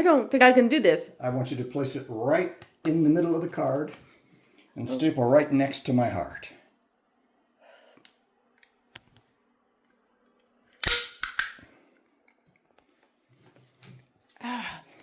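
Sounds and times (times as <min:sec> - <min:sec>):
staple gun snap: 0:10.8 - 0:11.7.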